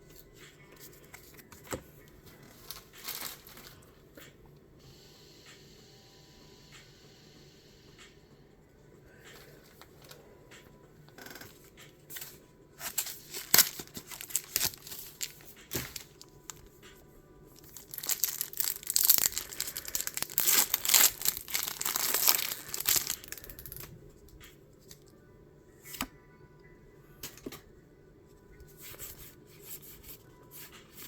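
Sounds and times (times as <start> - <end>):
packaging torn and crinkled: 12.8 - 16.6, 17.6 - 23.9.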